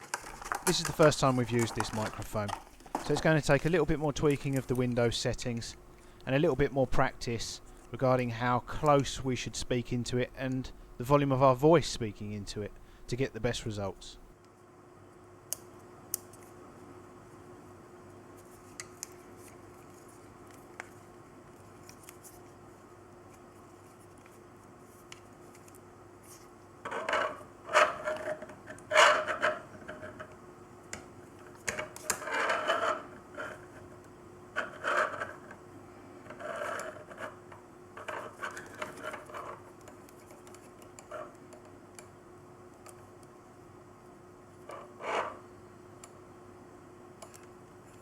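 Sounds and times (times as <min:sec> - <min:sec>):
packaging rubbing and rustling: 0:00.0 - 0:04.8
faint steady hum: 0:00.0 - 0:48.0.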